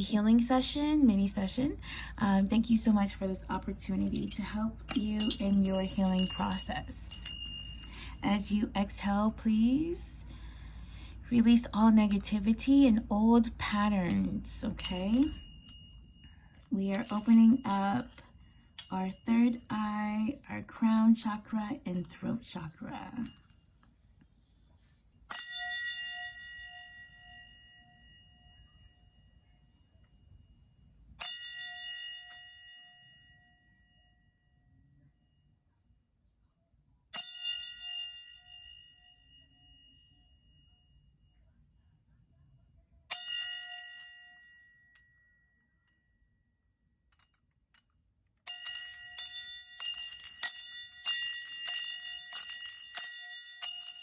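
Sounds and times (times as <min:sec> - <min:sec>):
small metal bell ringing: 0:03.6 - 0:08.5, 0:13.0 - 0:20.2, 0:22.7 - 0:35.6, 0:37.1 - 0:41.5, 0:43.1 - 0:46.4, 0:48.4 - 0:54.0.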